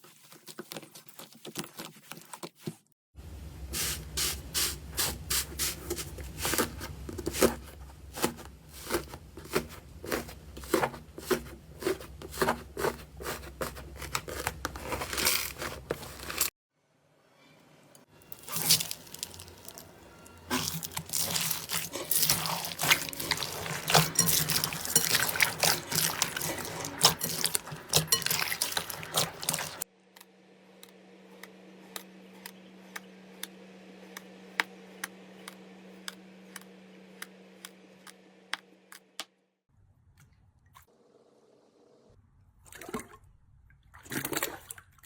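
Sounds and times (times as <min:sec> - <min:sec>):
steady low hum: 0:03.2 - 0:16.5, 0:18.1 - 0:39.2.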